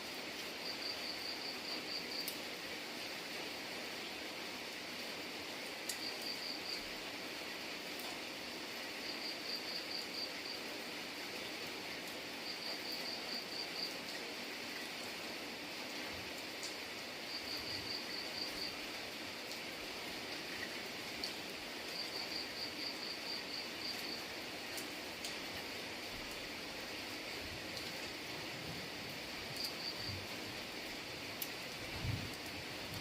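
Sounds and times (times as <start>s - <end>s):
steady rain hiss: 0.0s - 33.0s
water drip ticks: 5.8s - 6.6s, 16.4s - 18.7s, 20.5s - 24.1s, 24.7s - 25.4s, 29.5s - 30.2s, 31.4s - 31.6s.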